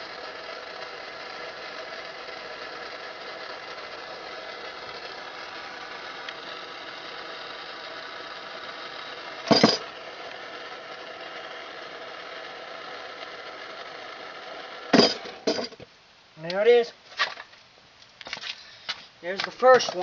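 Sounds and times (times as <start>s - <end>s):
torch flame hissing: 0.0s - 13.7s
sharp metal clank: 9.5s - 9.9s, 15.0s - 15.8s.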